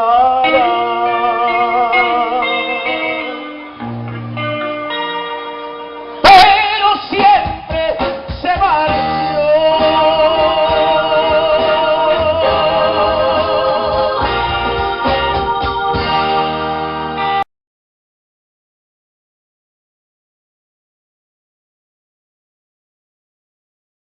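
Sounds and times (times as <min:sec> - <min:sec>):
bass line: 0:00.0 - 0:17.4
sustained keyboard chords: 0:09.0 - 0:17.4
melody with wavering vibrato: 0:09.9 - 0:17.4.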